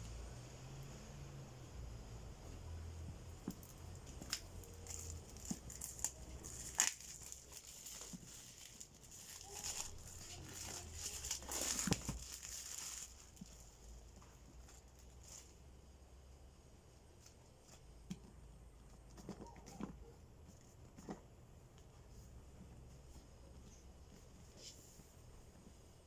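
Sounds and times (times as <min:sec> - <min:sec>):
packaging crinkling and rustling: 0:03.3 - 0:15.6.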